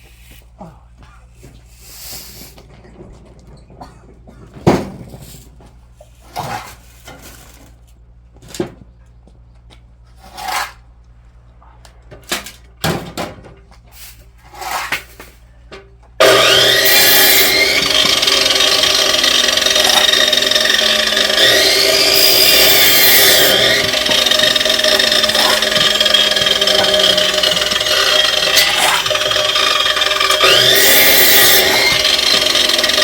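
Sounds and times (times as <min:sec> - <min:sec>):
woodworking machinery running: 0:16.2 - 0:33.0.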